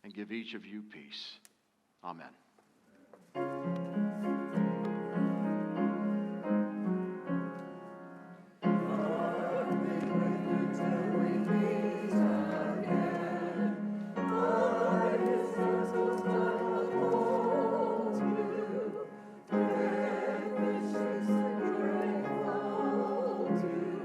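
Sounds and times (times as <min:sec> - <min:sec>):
held keyboard chords: 0:03.4 - 0:24.0
voices singing with keyboard: 0:08.6 - 0:24.0.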